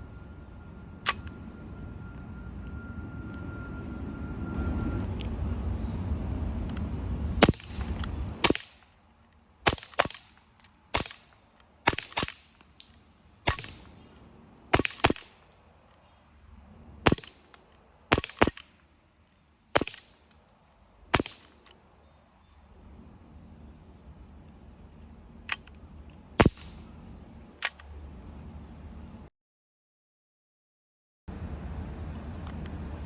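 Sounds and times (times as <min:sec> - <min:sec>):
low rumble: 0:00.0 - 0:08.6
air pistol shots: 0:07.4 - 0:08.9, 0:09.6 - 0:14.0, 0:14.7 - 0:15.5, 0:17.0 - 0:18.8, 0:19.7 - 0:20.2, 0:21.1 - 0:21.7, 0:26.4 - 0:26.9.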